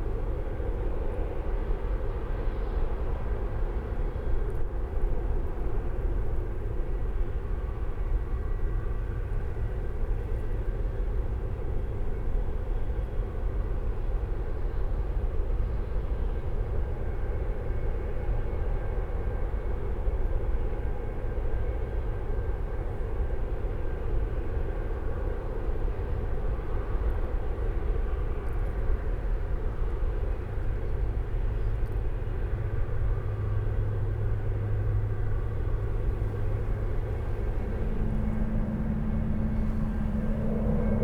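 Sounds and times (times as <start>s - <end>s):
low industrial rumble: 30.4s - 41.0s
deep hum: 35.0s - 41.0s.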